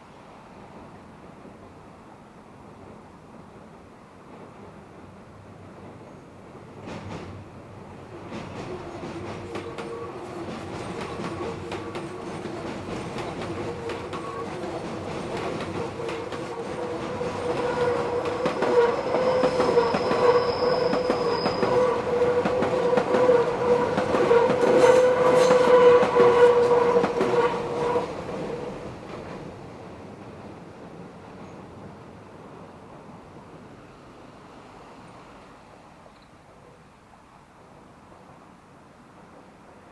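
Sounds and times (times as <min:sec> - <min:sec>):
train wheels clattering on rail: 0:05.6 - 0:33.9
train wheel flanges squealing: 0:08.4 - 0:28.3.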